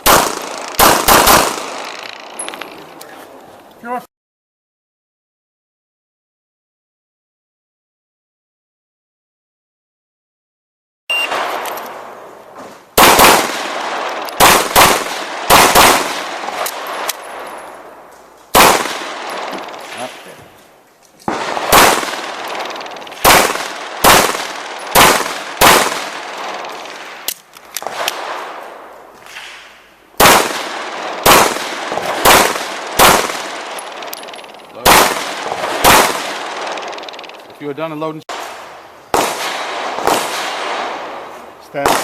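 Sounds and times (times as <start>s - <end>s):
pistol shots echoing: 0.0s - 2.5s, 13.0s - 17.9s, 18.5s - 20.3s, 21.3s - 28.6s, 30.2s - 37.5s, 38.3s - 42.0s.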